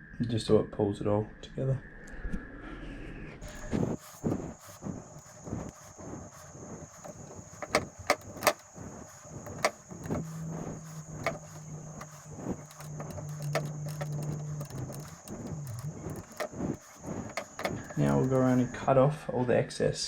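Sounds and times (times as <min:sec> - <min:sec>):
steady low hum: 0:03.4 - 0:18.9.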